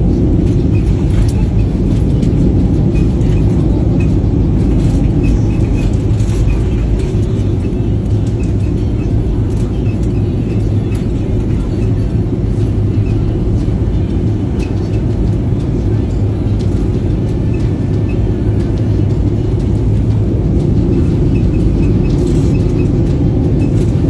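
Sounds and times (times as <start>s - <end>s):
airliner cabin engine rumble: 0.0s - 24.0s.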